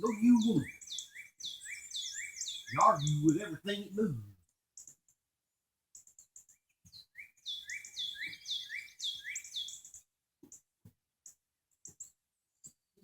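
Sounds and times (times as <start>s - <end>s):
songbird singing: 0.0s - 5.0s, 6.0s - 10.6s.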